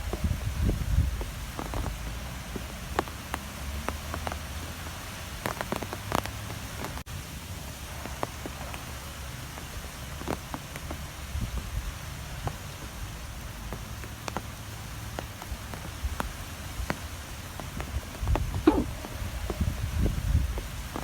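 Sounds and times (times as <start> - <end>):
strong wind rumbling: 0.0 - 1.2, 18.2 - 21.0
light taps and patters: 0.0 - 21.0.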